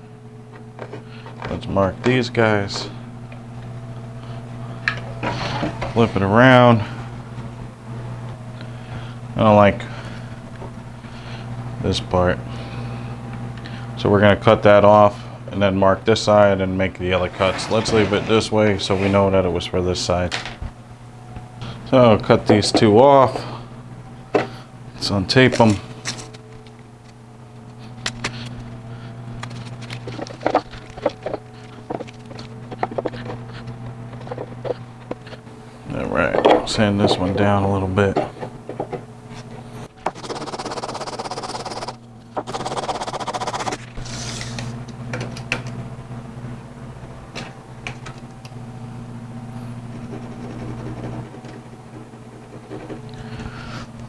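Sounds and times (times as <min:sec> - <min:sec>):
steady low hum: 0:00.0 - 0:54.0
tape peeling off wood: 0:40.1 - 0:44.7.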